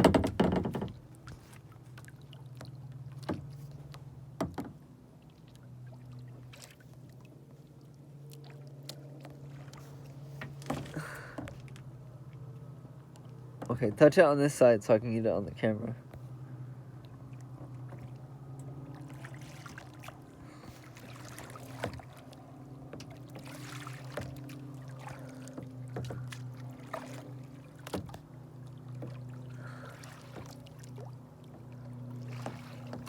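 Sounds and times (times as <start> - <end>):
knocks against kayak hull: 0.0 - 1.0, 4.4 - 4.8
steady low hum: 0.1 - 33.0
small water splashes: 0.9 - 14.1, 16.4 - 33.0.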